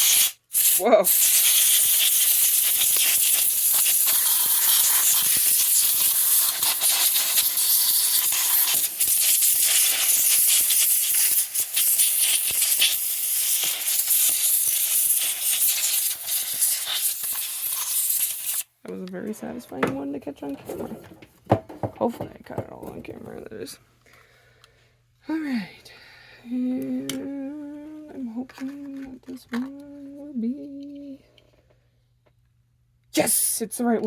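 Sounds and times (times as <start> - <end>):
compressed air hissing: 0.0 - 18.7.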